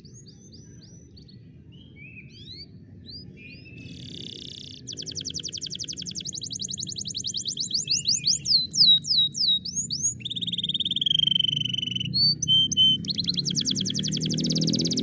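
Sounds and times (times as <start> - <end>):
canary singing: 3.5 - 15.0.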